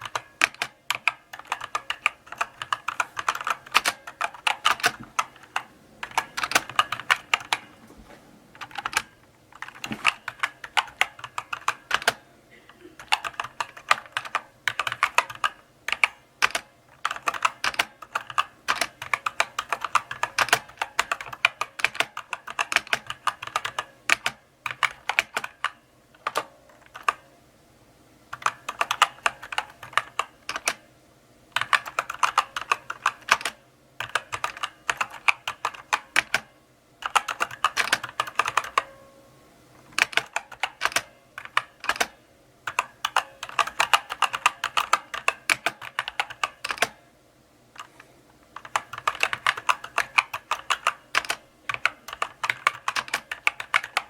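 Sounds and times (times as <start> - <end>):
mechanical keyboard key clicks: 0.0 - 7.7, 8.6 - 12.2, 13.0 - 27.2, 28.3 - 30.8, 31.6 - 38.9, 40.0 - 47.0, 48.6 - 54.0.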